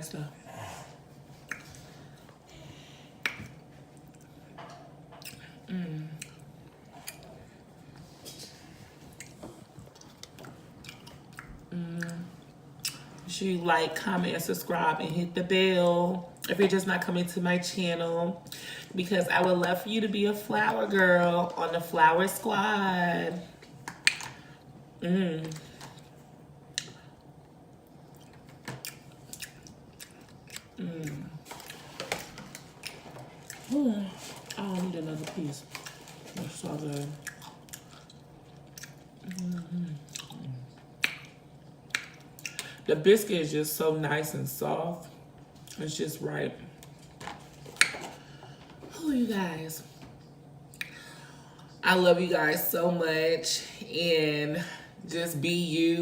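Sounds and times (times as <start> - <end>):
person chewing food: 0.9 - 2.5, 3.2 - 13.3, 25.8 - 34.8, 35.6 - 42.8
person humming: 5.7 - 6.2
wet lip-smacking clicks: 41.0 - 42.7.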